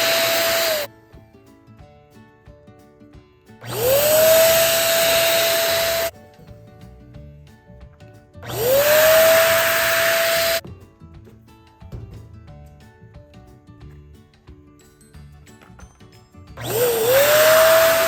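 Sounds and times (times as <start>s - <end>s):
balloon pump motor whine: 0.0s - 0.9s, 3.6s - 6.1s, 8.4s - 10.6s, 16.6s - 18.0s
quiet background music: 0.0s - 18.0s.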